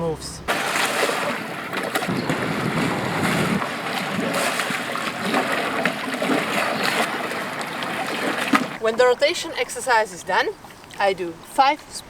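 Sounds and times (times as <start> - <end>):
water rushing around boat: 0.0 - 12.0
paddle splashing in water: 0.5 - 9.1.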